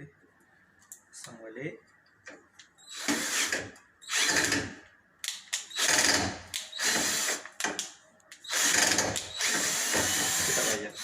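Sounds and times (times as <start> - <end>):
cordless drill driving screws: 2.8 - 4.7, 5.7 - 7.4, 8.4 - 11.0.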